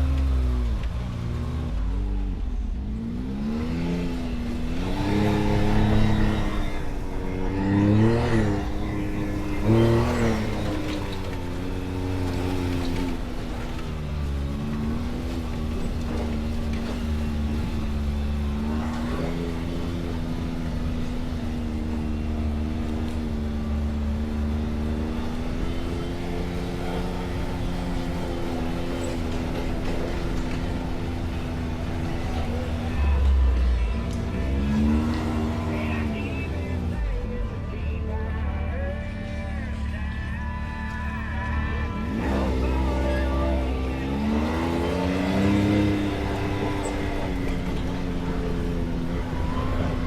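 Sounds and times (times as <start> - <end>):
off-road vehicle engine revving: 0.0 - 50.0.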